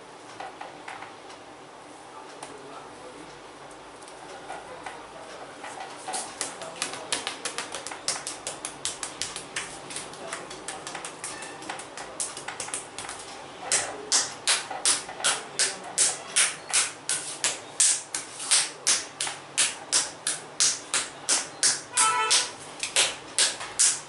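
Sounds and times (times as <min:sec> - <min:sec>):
hands slapping a person's back: 0:06.2 - 0:24.0.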